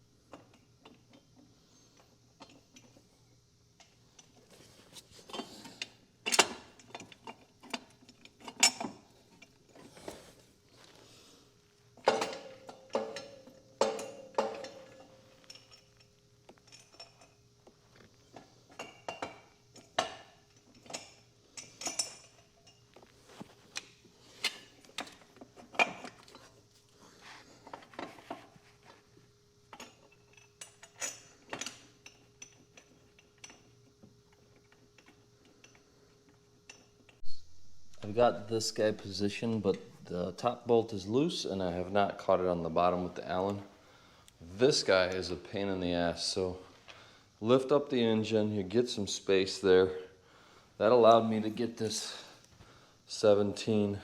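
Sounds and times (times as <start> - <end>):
hand tools clinking on metal: 12.0 - 17.4.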